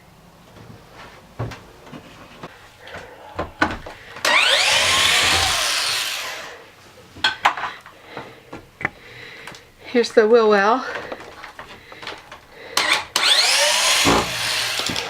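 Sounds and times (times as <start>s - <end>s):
wood panel rasping tear: 4.3s - 6.4s, 12.9s - 15.0s.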